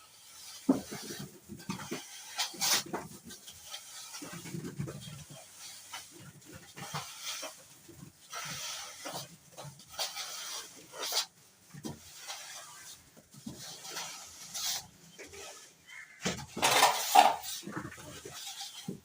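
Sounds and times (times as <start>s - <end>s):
trowel scraping plaster: 0.0s - 19.0s.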